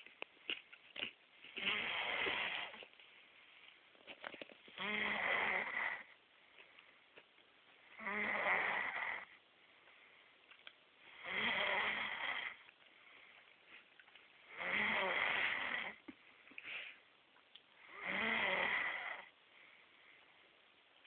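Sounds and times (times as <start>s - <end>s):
person snoring: 1.6s - 2.8s, 4.8s - 6.1s, 11.1s - 12.6s, 14.5s - 16.0s, 17.9s - 19.3s.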